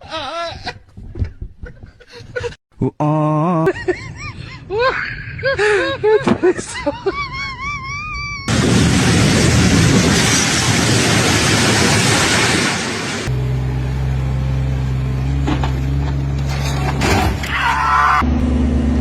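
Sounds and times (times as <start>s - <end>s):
loud rushing noise: 8.5s - 13.3s
low engine drone: 8.5s - 19.0s.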